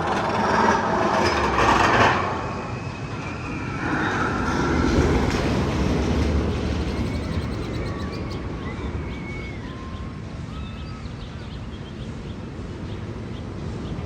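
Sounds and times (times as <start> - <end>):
train rumbling and rattling: 0.0 - 10.6.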